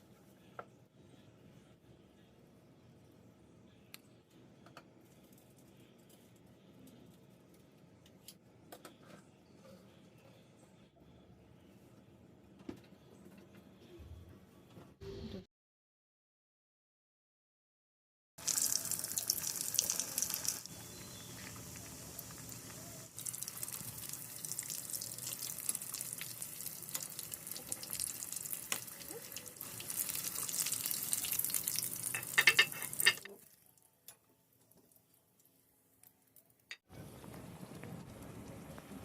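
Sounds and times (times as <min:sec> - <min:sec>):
food deep-frying in oil: 0:18.4 - 0:33.8.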